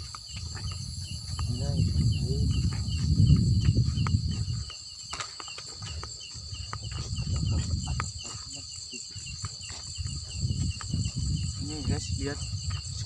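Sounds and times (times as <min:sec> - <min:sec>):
insects chirring: 0:00.0 - 0:13.0
low rumble: 0:01.0 - 0:04.6.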